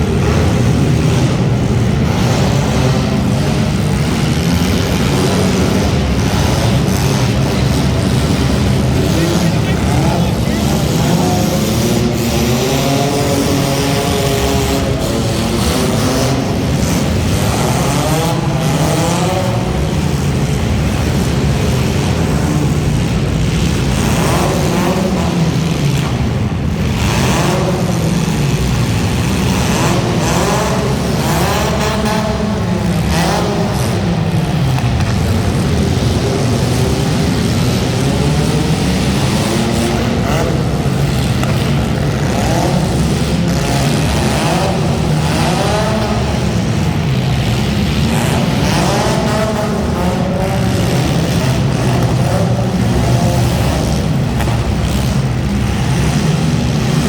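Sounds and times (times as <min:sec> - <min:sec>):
race car engines revving: 0:00.0 - 0:57.0.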